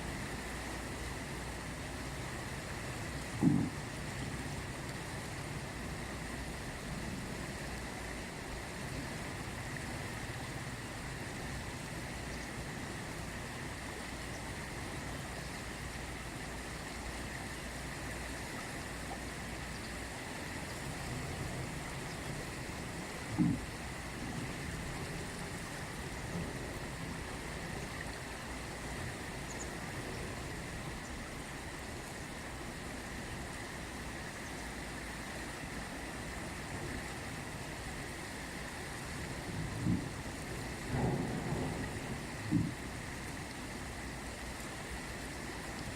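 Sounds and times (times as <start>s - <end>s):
river water rushing: 0.0s - 45.9s
low thump: 3.4s - 3.8s, 23.3s - 23.7s, 40.9s - 42.8s.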